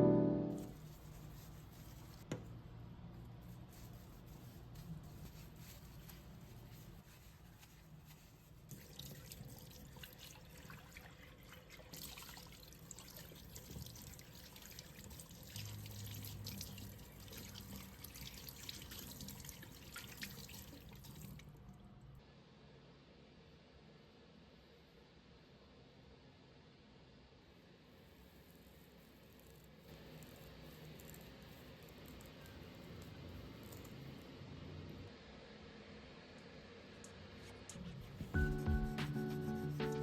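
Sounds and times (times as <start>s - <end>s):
water running and dripping: 8.7s - 21.5s.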